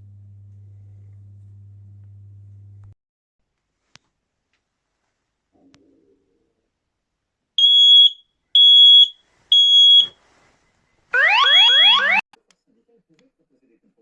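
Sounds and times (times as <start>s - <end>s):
high-pitched alarm beeps: 7.6s - 10.1s.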